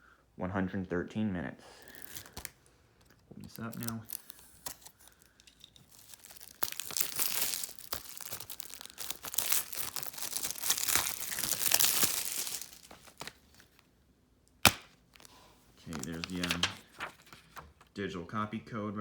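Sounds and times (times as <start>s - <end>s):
plastic shrink wrap tearing: 1.9s - 2.6s, 3.5s - 13.8s, 14.6s - 17.6s.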